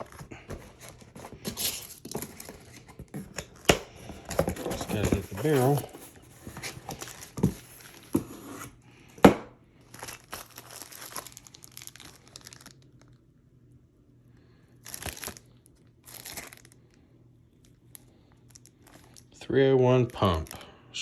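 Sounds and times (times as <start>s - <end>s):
packaging crinkling and rustling: 0.0s - 8.7s, 9.8s - 13.2s, 14.8s - 16.8s, 17.6s - 19.4s.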